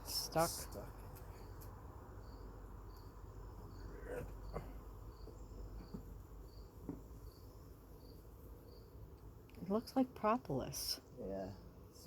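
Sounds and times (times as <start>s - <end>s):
cricket chirping: 0.0s - 9.0s.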